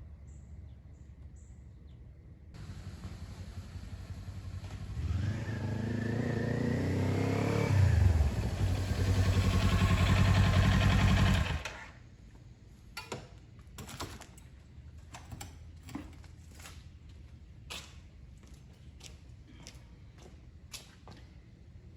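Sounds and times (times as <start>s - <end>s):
motorcycle engine revving: 2.6s - 11.9s.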